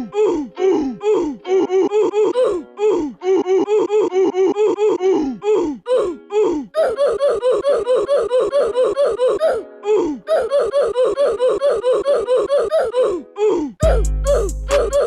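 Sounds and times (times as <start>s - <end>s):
rapid high-pitched laughter: 6.8s - 9.6s, 13.8s - 15.0s.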